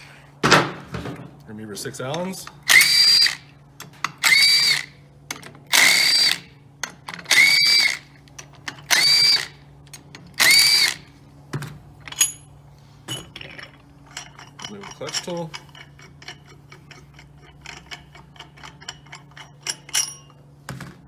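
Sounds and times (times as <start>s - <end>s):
cordless power driver whine: 2.6s - 3.5s, 4.2s - 5.0s, 5.7s - 6.5s, 7.2s - 8.2s, 8.8s - 9.6s, 10.3s - 11.1s.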